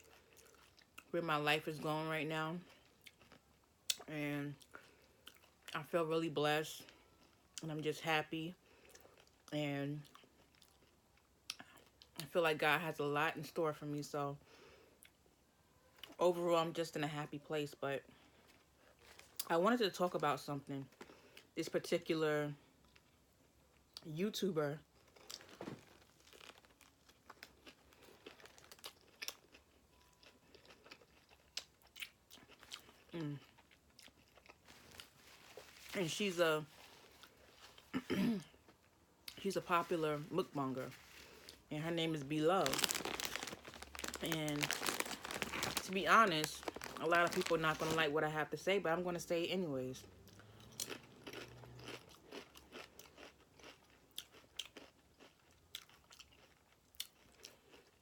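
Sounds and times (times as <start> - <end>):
close-up chewing sandwich: 24.9 - 35.9, 42.6 - 48.0, 50.2 - 58.0.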